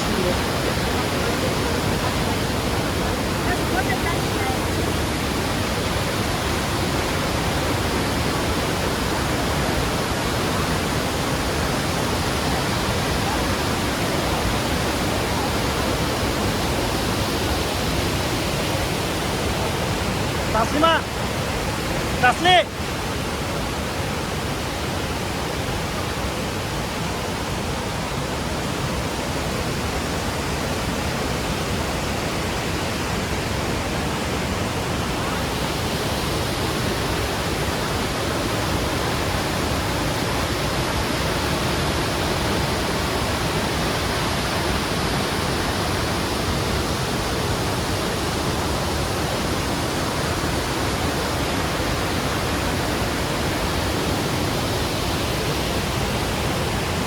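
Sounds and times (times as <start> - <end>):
waterfall rushing: 0.0 - 57.0.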